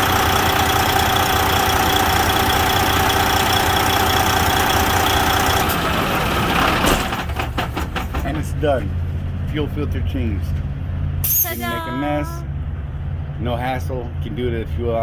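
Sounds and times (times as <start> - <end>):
diesel truck engine idling: 0.0 - 7.6.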